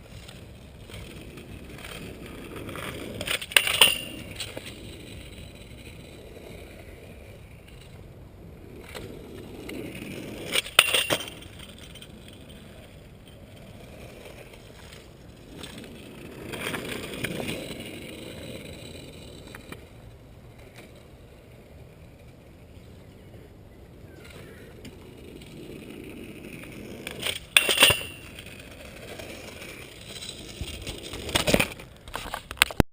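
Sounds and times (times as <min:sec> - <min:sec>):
scooter grinding scrape: 0:00.0 - 0:32.8
scooter wheels rolling on pavement: 0:00.0 - 0:32.8
scooter landing clacks: 0:02.8 - 0:05.3, 0:09.9 - 0:12.5, 0:26.2 - 0:32.8.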